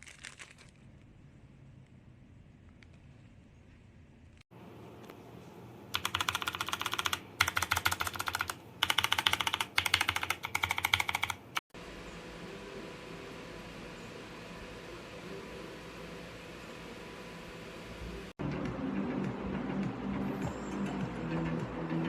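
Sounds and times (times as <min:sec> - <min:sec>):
typing on mechanical keyboard: 0:05.9 - 0:11.6.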